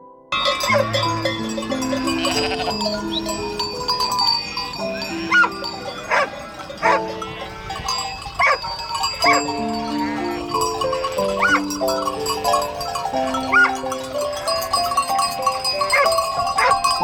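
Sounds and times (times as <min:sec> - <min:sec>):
farm animal bleating: 0:00.4 - 0:12.7
gentle plucked background music: 0:09.2 - 0:17.0.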